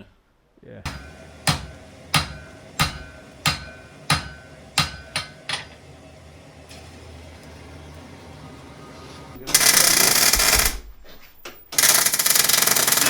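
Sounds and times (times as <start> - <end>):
hammer striking anvil: 0.9 - 5.9.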